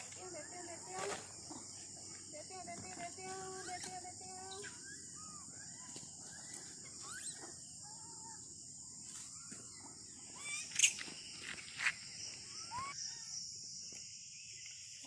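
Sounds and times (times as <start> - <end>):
insects droning: 0.0 - 15.0
bird chirps: 3.2 - 15.0.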